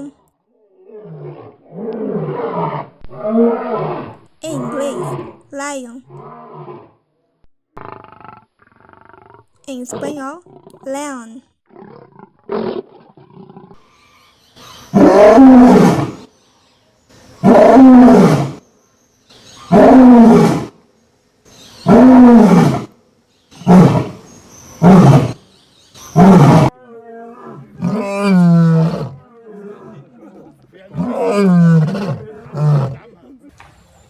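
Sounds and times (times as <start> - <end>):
lion roaring: 0.0 - 5.4, 6.0 - 7.1, 7.8 - 10.9, 11.7 - 13.8, 14.6 - 16.3, 17.4 - 18.6, 19.7 - 20.7, 21.8 - 23.0, 23.6 - 24.2, 24.8 - 25.4, 26.2 - 33.3.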